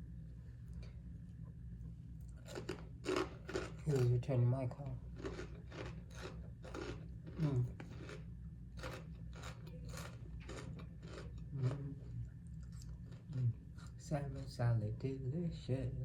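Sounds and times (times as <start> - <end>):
chewing crunchy salad: 2.1 - 14.5.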